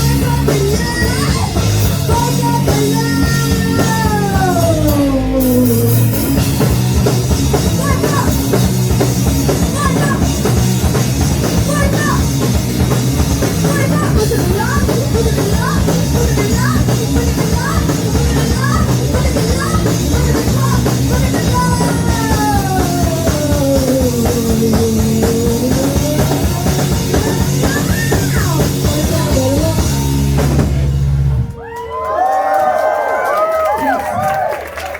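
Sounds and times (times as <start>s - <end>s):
punk rock band playing: 0.0s - 31.6s.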